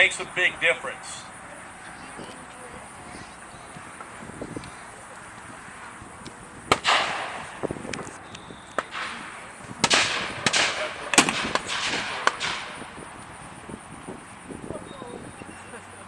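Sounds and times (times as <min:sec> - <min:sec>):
blank gunshots echoing: 0:00.0 - 0:08.1, 0:08.7 - 0:14.8.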